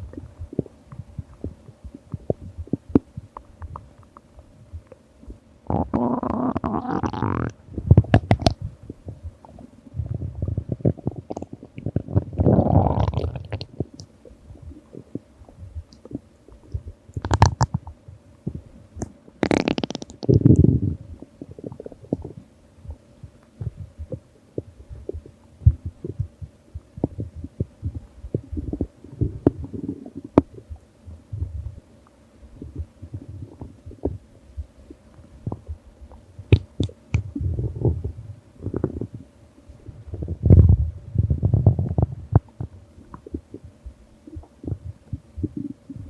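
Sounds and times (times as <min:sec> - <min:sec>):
stomach growling: 0:00.0 - 0:04.2, 0:05.7 - 0:23.0, 0:23.6 - 0:31.8, 0:32.6 - 0:46.0
small bubbling pops: 0:06.8 - 0:08.6, 0:15.9 - 0:18.0, 0:19.0 - 0:20.7, 0:35.5 - 0:37.4.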